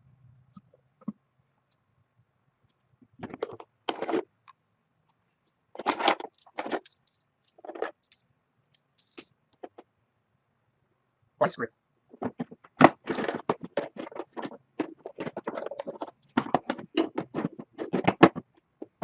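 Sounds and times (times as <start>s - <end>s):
small metal parts clattering: 5.8s - 9.8s.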